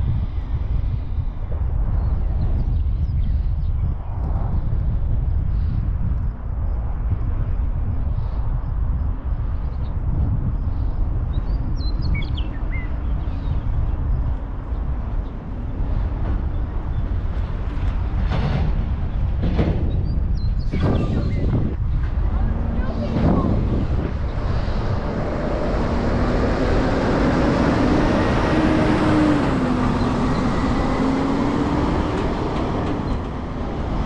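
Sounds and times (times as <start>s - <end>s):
wind buffeting microphone: 0.0s - 34.0s
bird chirping: 11.3s - 14.2s.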